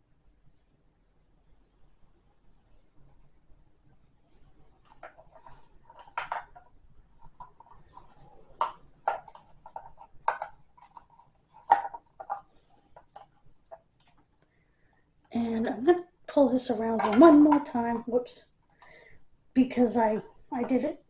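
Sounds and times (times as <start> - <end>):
small objects tapping and rustling: 4.8 - 14.4, 16.9 - 18.1.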